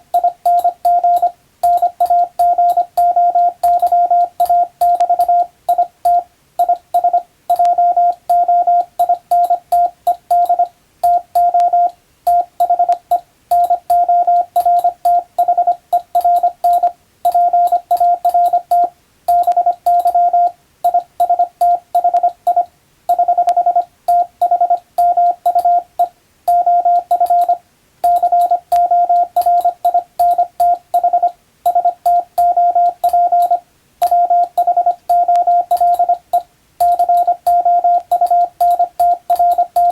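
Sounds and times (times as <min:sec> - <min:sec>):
morse code beeping tone: 0:00.0 - 0:39.9.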